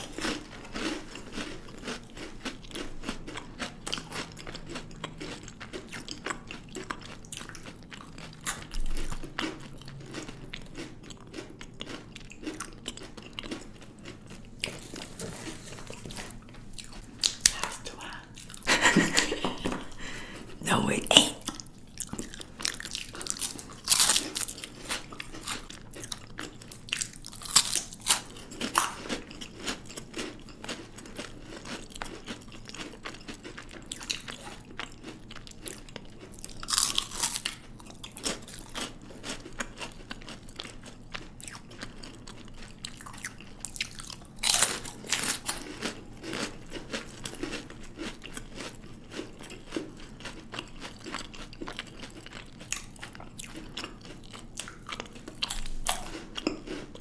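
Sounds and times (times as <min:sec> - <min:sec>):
crackling chews: 0:00.0 - 0:20.6, 0:21.4 - 0:57.0
chocolate crunchy bites: 0:21.4 - 0:57.0.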